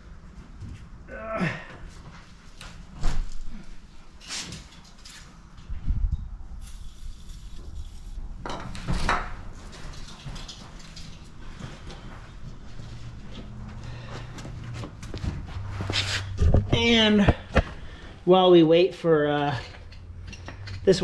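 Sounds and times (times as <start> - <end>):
metal tools clanking: 19.4 - 21.0.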